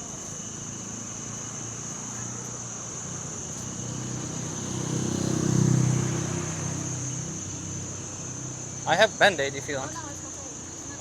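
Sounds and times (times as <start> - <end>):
crickets chirring: 0.0 - 11.0
vehicle passing: 3.1 - 10.6.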